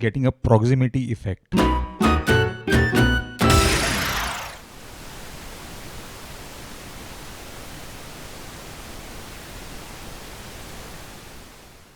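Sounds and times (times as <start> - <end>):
microphone noise hiss: 4.6 - 11.9.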